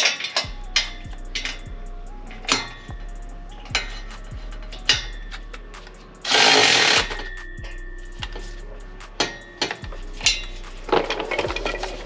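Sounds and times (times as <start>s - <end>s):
metal knocks and clinks: 9.2s - 12.0s.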